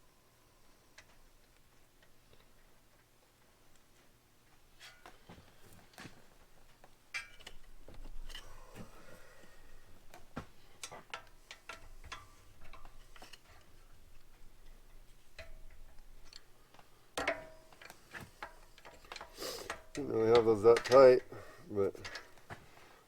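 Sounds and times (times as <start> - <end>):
hand tools clicking on metal: 10.1 - 22.6.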